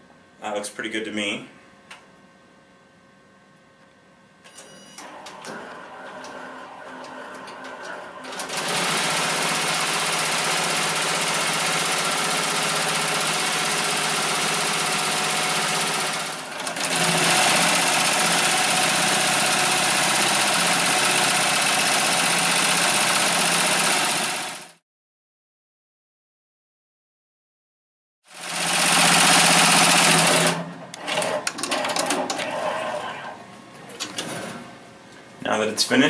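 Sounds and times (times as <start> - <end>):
embroidery machine stitching: 5.0 - 24.8, 28.3 - 33.2.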